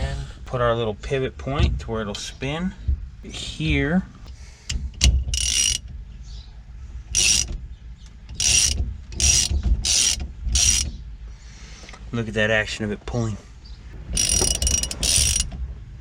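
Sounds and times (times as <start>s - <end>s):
socket ratchet clicking: 5.0s - 5.8s, 7.2s - 7.5s, 8.3s - 10.9s, 14.2s - 15.5s.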